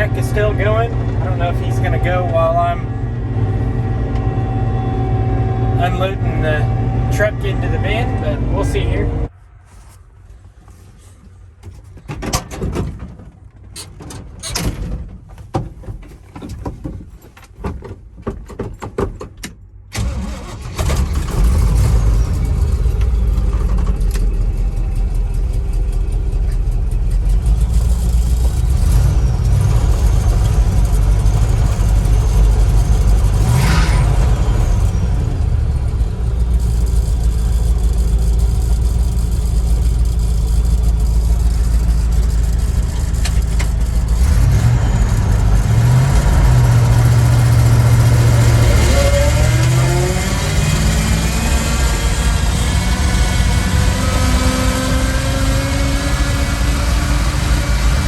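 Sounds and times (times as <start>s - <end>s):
vehicle engine starting and running: 0.0s - 9.4s, 18.7s - 58.0s
knocks and clatter: 11.6s - 19.6s.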